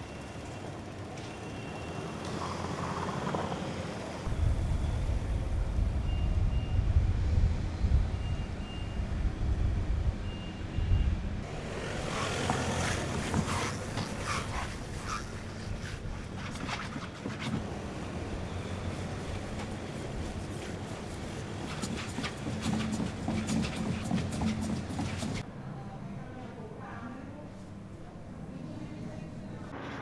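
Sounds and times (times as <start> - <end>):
low vehicle rumble: 17.6 - 23.4.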